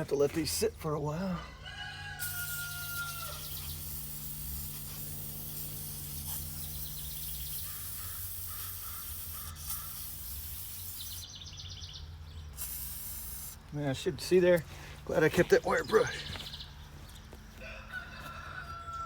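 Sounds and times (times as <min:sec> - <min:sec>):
rooster crowing: 0:01.4 - 0:03.6, 0:17.5 - 0:19.0
bird calls: 0:06.6 - 0:10.0, 0:14.7 - 0:18.4.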